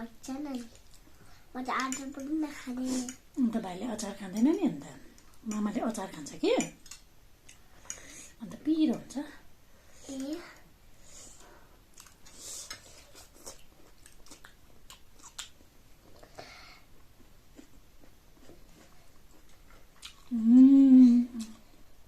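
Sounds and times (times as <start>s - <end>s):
chewing and mouth smacking: 11.9s - 16.3s, 17.5s - 20.3s
person humming mmm: 20.3s - 21.6s.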